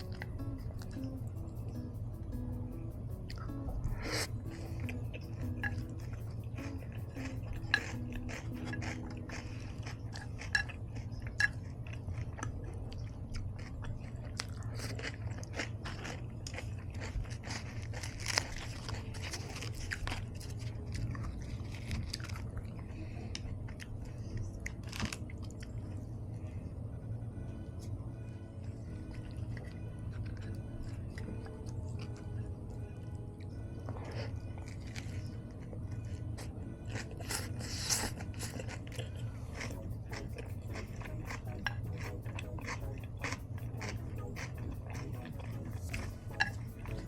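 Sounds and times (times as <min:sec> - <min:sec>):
chips crunching while chewing: 0:04.0 - 0:22.8, 0:24.6 - 0:25.9, 0:34.0 - 0:47.0.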